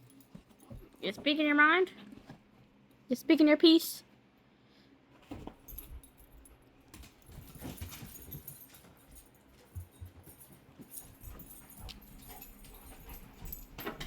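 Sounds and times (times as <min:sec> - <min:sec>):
jingling collar tags: 0:05.6 - 0:14.0.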